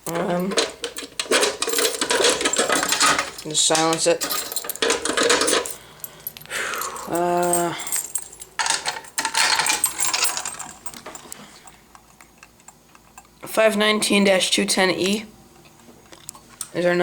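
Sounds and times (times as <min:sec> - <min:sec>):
metal clinking and rattling: 0:00.0 - 0:13.3.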